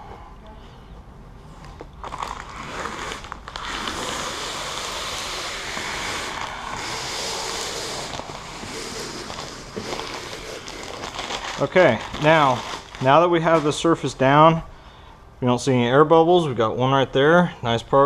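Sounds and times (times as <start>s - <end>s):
squeegee scraping vinyl film: 1.6s - 14.1s.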